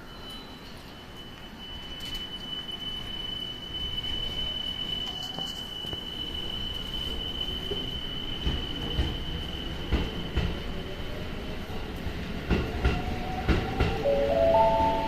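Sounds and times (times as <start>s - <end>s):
high-pitched wheel squeal: 0.0s - 11.0s
train wheels clacking on rail joints: 7.6s - 10.6s.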